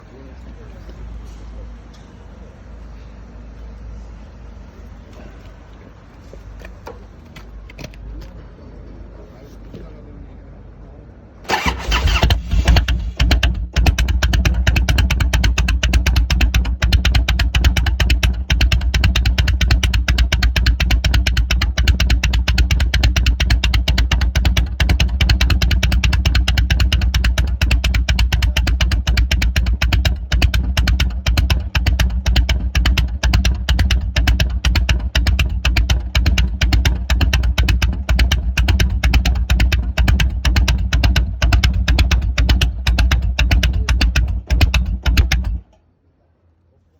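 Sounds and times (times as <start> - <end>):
electric starter cranking: 11.5 - 14.0
motorcycle engine idling unevenly: 11.5 - 45.7.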